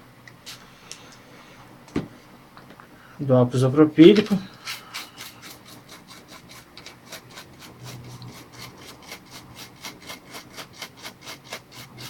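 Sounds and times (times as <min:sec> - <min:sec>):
stiff brush scrubbing: 0:04.1 - 0:12.0.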